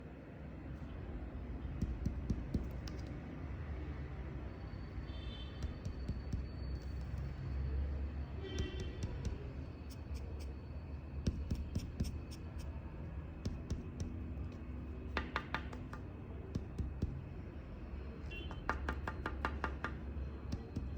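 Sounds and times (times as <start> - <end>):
light knocks and taps: 1.8 - 3.2, 13.4 - 17.2, 18.3 - 20.9.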